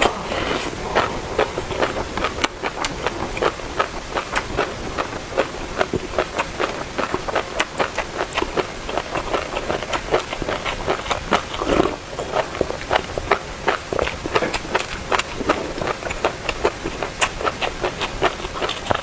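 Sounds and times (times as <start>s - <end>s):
wet chewing: 0.0s - 19.0s.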